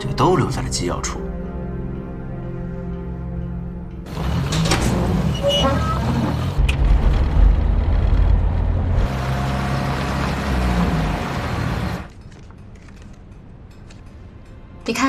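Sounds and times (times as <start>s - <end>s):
motor vehicle rumble: 4.0s - 13.7s
road noise: 4.0s - 14.3s.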